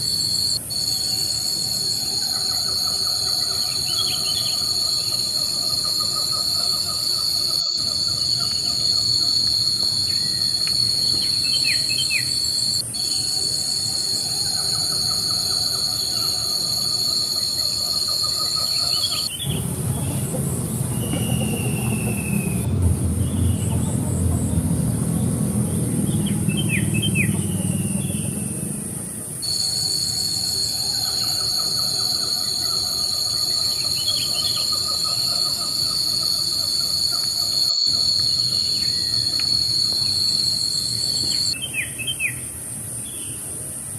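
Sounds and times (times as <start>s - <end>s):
insects droning: 0.0s - 43.9s
bird chirps: 14.8s - 28.8s, 29.4s - 42.4s
low rumble: 19.4s - 29.4s.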